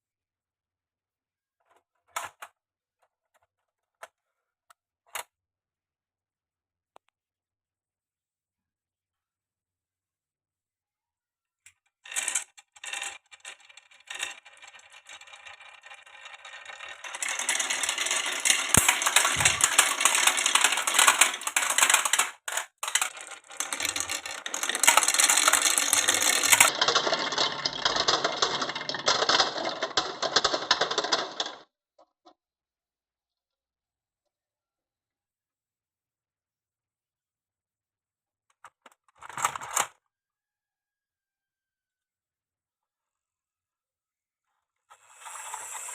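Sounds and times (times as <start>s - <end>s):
marbles rattling down wooden run: 12.1s - 31.6s.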